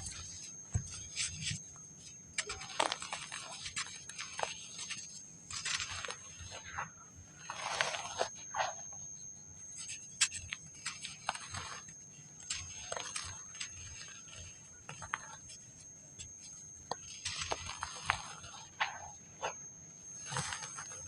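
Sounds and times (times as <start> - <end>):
dry sand crumbling and crunching: 0.0 - 9.0, 9.6 - 21.0.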